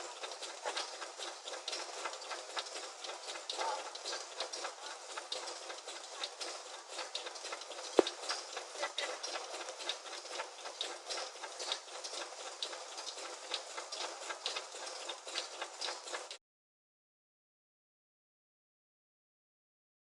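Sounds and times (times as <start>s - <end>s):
small clicks and taps: 0.3s - 16.2s.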